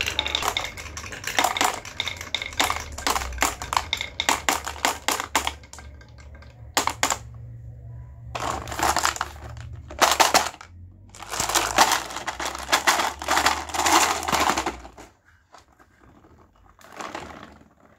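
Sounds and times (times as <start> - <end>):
balls clattering down marble run: 0.0 - 7.5, 8.4 - 15.2, 16.6 - 17.9
low hum: 5.6 - 15.0.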